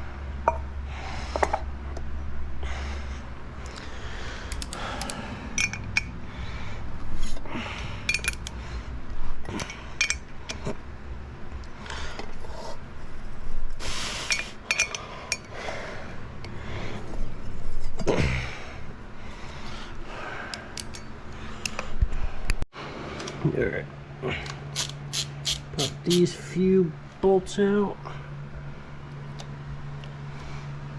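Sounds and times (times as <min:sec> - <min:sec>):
metal tools clinking: 0:08.1 - 0:08.4, 0:14.3 - 0:15.5.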